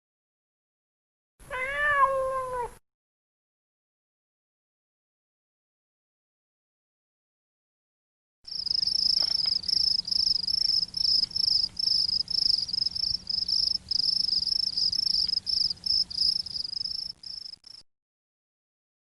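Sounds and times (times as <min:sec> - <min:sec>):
insect chirping: 0:08.5 - 0:17.8.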